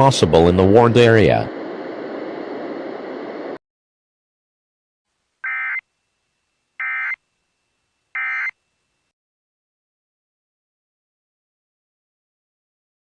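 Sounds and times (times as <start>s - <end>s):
digital data tone bursts: 5.4s - 5.8s, 6.8s - 7.2s, 8.2s - 8.6s.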